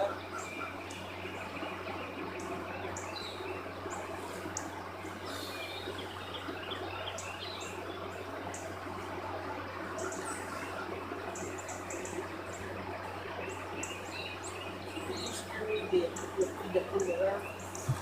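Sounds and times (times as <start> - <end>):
small birds chirping: 0.0 - 18.0
steady low hum: 0.0 - 18.0.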